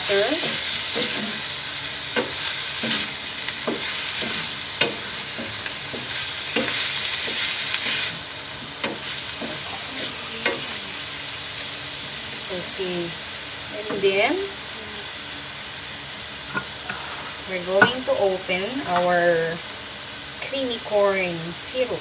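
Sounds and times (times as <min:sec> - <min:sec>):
food sizzling in a pan: 0:00.0 - 0:22.0
utensil knocking against pan: 0:02.2 - 0:07.5, 0:17.8 - 0:18.1.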